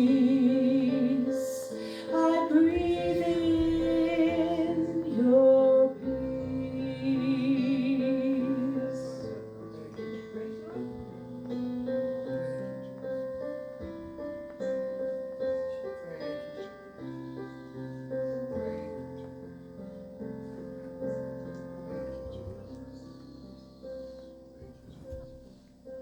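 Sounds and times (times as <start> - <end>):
soft piano chords: 0.0 - 26.0.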